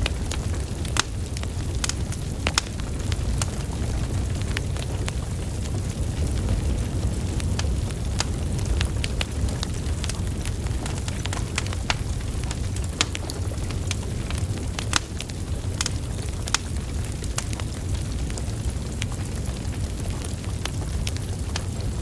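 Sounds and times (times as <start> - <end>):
logs crackling and popping: 0.0 - 22.0
low rumble of flames: 0.0 - 22.0.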